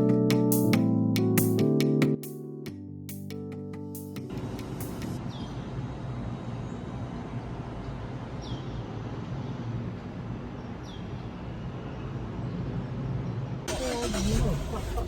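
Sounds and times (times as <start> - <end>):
car engine and road noise: 4.3 - 15.0.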